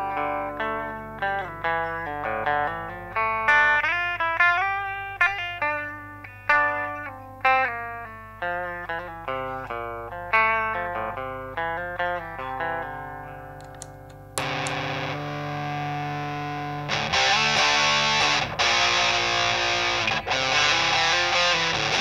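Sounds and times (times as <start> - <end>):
distorted guitar chords: 0.0 - 22.0
clean electric guitar notes: 8.7 - 22.0.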